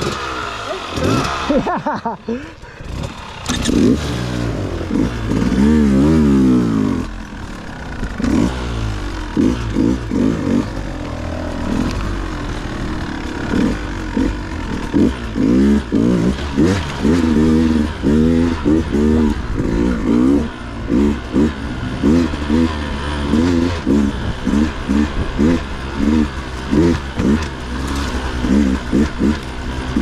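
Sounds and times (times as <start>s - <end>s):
dirt bike engine revving: 0.0s - 30.0s.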